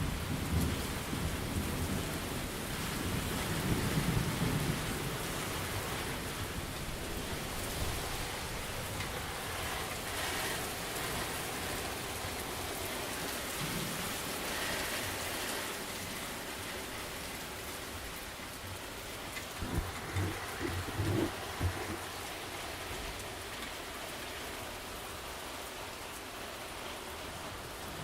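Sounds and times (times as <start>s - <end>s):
rain falling on a surface: 0.0s - 6.2s, 9.8s - 18.6s, 24.0s - 28.0s.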